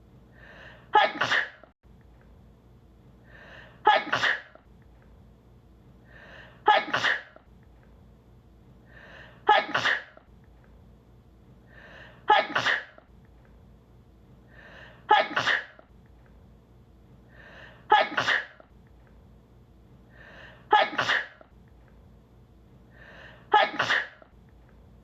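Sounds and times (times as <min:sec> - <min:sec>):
short in-breath: 0:00.3 - 0:00.9, 0:03.2 - 0:03.8, 0:06.0 - 0:06.6, 0:08.9 - 0:09.4, 0:11.7 - 0:12.3, 0:14.5 - 0:15.1, 0:17.3 - 0:17.9, 0:20.1 - 0:20.7, 0:22.9 - 0:23.5
woman sneezing: 0:00.9 - 0:01.7, 0:03.8 - 0:04.6, 0:06.6 - 0:07.4, 0:09.4 - 0:10.2, 0:12.2 - 0:13.0, 0:15.0 - 0:15.8, 0:17.9 - 0:18.6, 0:20.7 - 0:21.4, 0:23.5 - 0:24.3.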